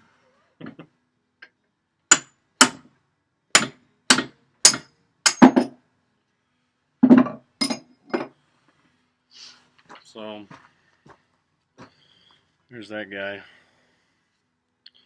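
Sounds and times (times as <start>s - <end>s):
hammer striking steel: 3.6s - 5.7s.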